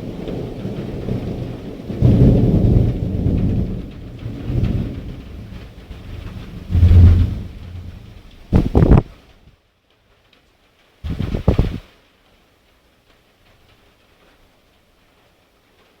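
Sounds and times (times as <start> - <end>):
thunder rumbling: 0.0 - 9.1, 11.1 - 11.8
steady rain: 0.0 - 16.0.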